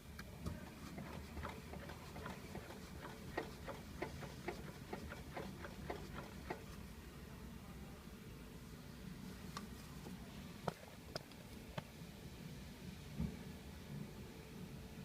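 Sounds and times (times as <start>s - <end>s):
drivetrain knocking: 1.0s - 6.7s.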